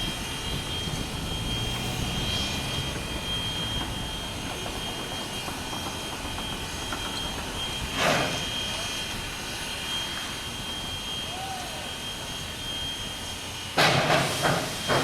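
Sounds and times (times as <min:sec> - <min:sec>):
train rumbling: 0:00.0 - 0:09.6, 0:13.7 - 0:15.0
high whine: 0:00.0 - 0:13.8.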